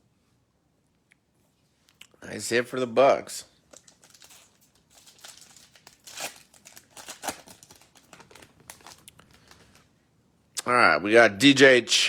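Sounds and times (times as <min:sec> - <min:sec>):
plastic wrapper crinkling and tearing: 0:03.7 - 0:09.9.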